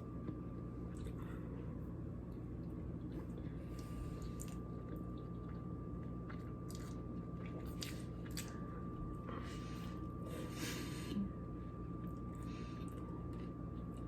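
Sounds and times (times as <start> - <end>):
low hum: 0.0 - 14.0
person chewing: 3.0 - 8.7.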